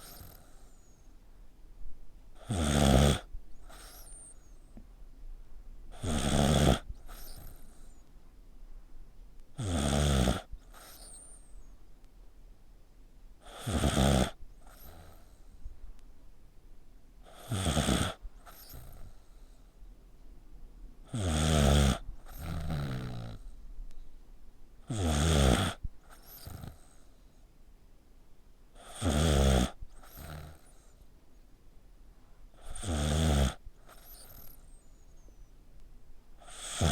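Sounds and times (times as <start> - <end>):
pet snoring: 0.0 - 1.0, 2.4 - 4.6, 5.9 - 8.0, 9.6 - 11.6, 13.4 - 15.4, 17.2 - 19.7, 21.1 - 23.6, 24.8 - 27.2, 28.8 - 31.0, 32.6 - 34.8, 36.4 - 36.9.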